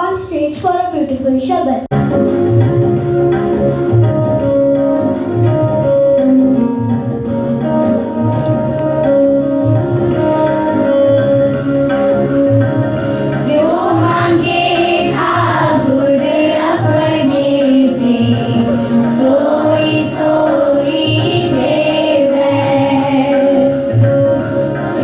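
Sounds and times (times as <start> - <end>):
group singing a hymn: 13.5 - 24.0, 24.8 - 25.0.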